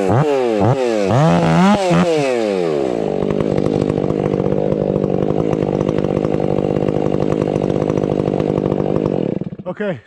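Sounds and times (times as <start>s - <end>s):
chainsaw idling: 0.0s - 10.0s.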